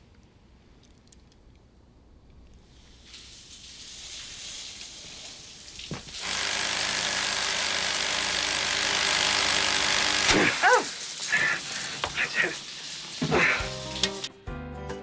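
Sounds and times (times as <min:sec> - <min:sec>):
soft hiss: 0:00.0 - 0:06.2
power drill whirring: 0:06.2 - 0:10.3.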